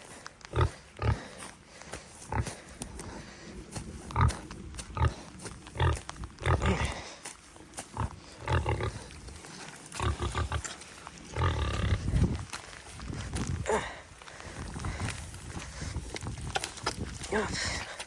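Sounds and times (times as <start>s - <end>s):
pig grunting: 0.5s - 1.5s, 2.2s - 3.3s, 4.0s - 7.2s, 7.9s - 12.4s.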